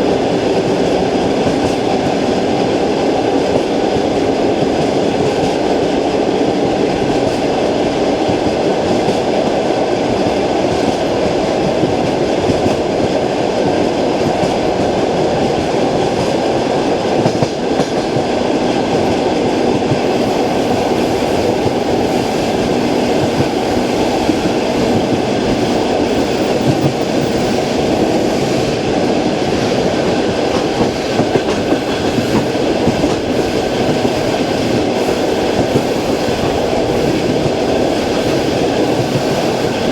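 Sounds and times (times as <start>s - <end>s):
train running rumble: 0.0s - 39.9s
train wheels clacking: 0.0s - 39.9s.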